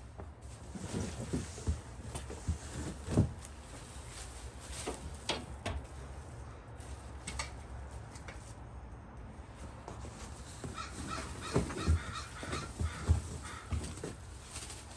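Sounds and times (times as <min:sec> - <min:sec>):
knocks and clicks handling parts: 0:04.8 - 0:06.0, 0:07.2 - 0:08.4.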